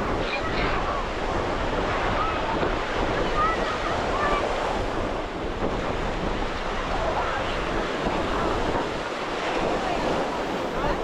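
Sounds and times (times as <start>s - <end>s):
ocean surf on beach: 0.0s - 11.0s
wind buffeting microphone: 0.0s - 11.0s.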